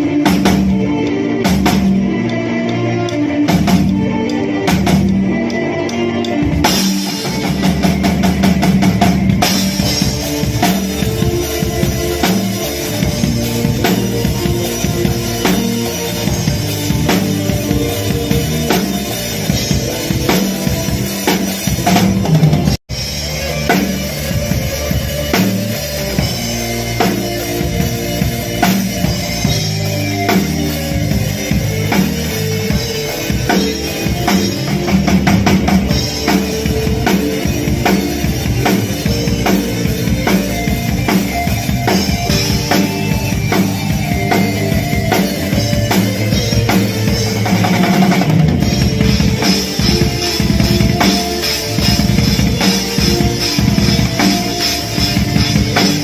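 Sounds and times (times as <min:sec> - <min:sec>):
music with drums and heavy bass: 0:00.0 - 0:56.0.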